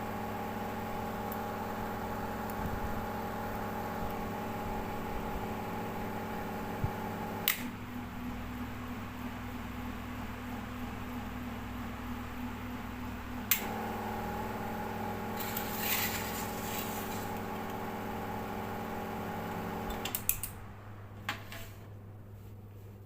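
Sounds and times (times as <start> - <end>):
low mains hum: 0.0 - 23.0
buzzing electrical hum: 9.6 - 23.0.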